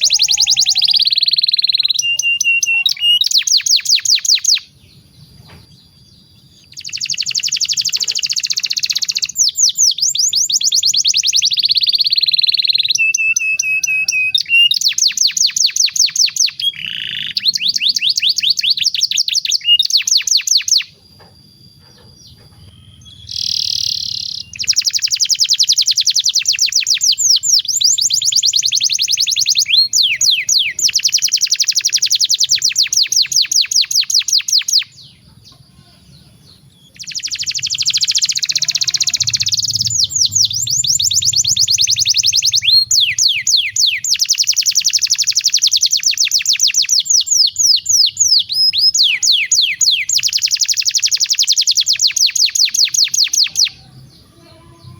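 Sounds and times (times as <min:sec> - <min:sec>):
canary singing rapid trills: 0:00.0 - 0:54.9.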